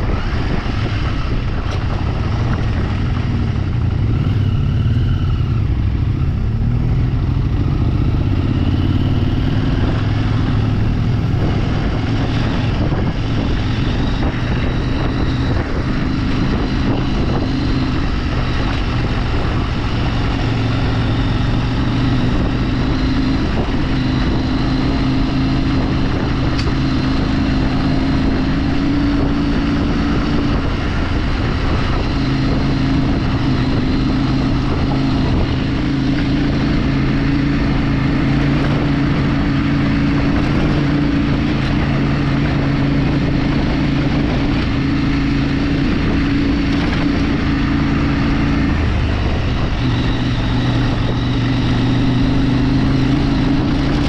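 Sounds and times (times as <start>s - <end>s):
motorcycle engine running: 0.0s - 54.0s
wind and road noise: 0.0s - 54.0s.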